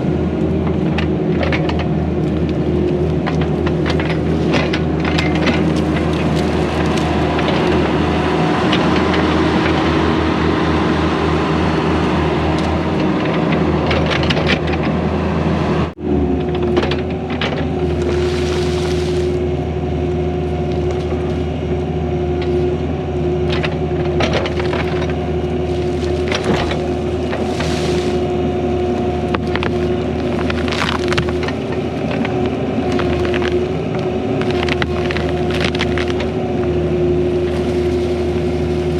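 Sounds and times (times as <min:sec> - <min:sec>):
diesel engine under load: 0:00.0 - 0:38.9
roots cracking and knocking: 0:00.6 - 0:10.1, 0:16.6 - 0:19.5, 0:20.3 - 0:21.6, 0:23.4 - 0:38.9.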